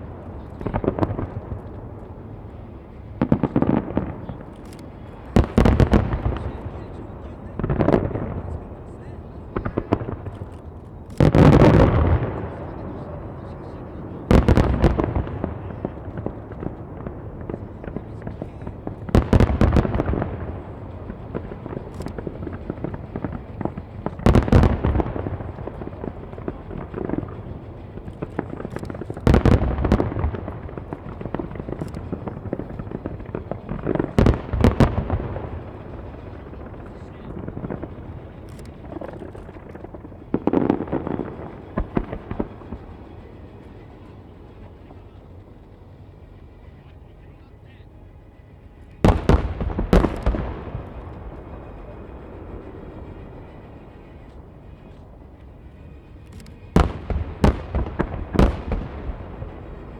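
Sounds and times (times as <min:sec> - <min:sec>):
echoing rumble: 0:00.0 - 0:44.8, 0:49.0 - 0:59.9
firework pops and crackling: 0:03.2 - 0:13.1, 0:13.7 - 0:43.3, 0:49.0 - 0:51.2, 0:56.2 - 0:59.9
firework shells bursting: 0:14.2 - 0:44.1, 0:49.0 - 0:59.9.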